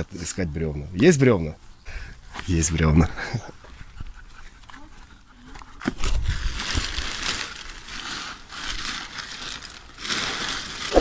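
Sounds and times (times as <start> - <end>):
crunching and rustling of brush: 5.6 - 11.0.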